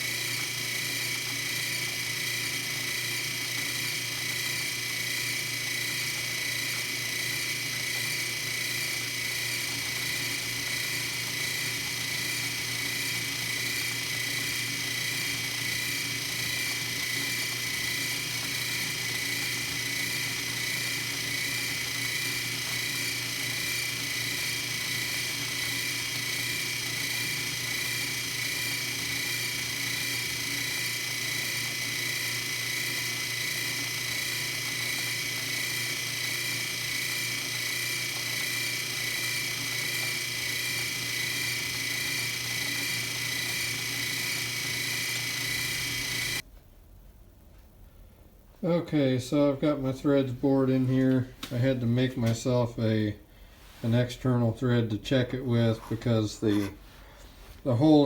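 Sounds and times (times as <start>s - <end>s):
metal lathe humming: 0.0s - 46.4s.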